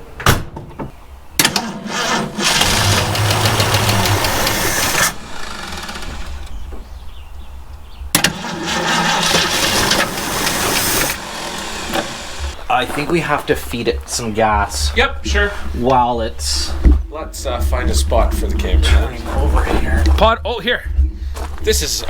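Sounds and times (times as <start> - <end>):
car engine cranking on starter: 1.4 - 6.6, 8.2 - 12.6.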